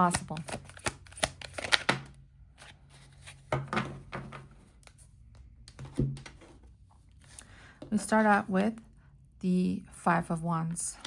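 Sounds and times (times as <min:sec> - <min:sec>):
cards clicking and tapping: 0:00.0 - 0:02.1
cards thudding on a table: 0:03.5 - 0:04.5.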